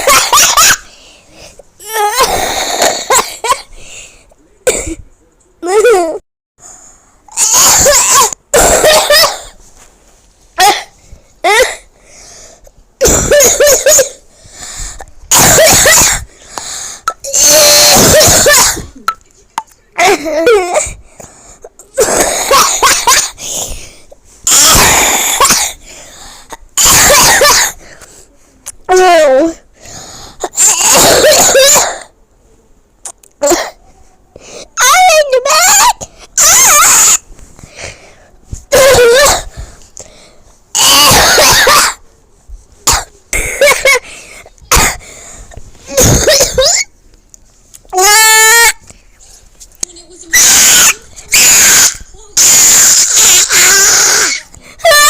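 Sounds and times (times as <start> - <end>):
person coughing: 4.6 - 5.0, 7.4 - 9.6, 13.0 - 14.2, 15.3 - 16.3, 17.3 - 19.1, 21.9 - 23.4, 26.8 - 27.8, 30.5 - 32.1, 40.8 - 42.0, 42.8 - 44.1, 44.7 - 45.1, 45.9 - 46.9.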